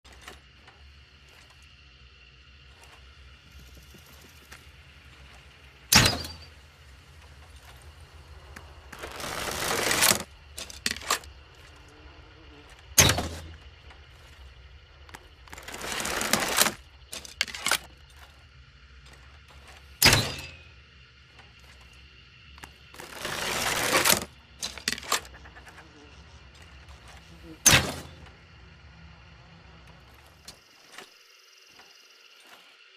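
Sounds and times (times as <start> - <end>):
scraping: 2.4 - 28.5.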